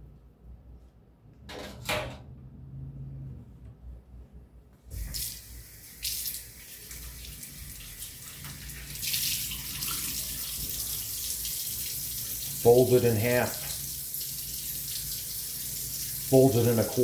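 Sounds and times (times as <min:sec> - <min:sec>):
water running into sink: 0:04.9 - 0:17.0.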